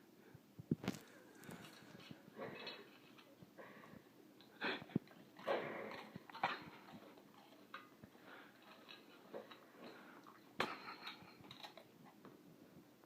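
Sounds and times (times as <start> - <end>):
dog chewing food: 4.4 - 12.2.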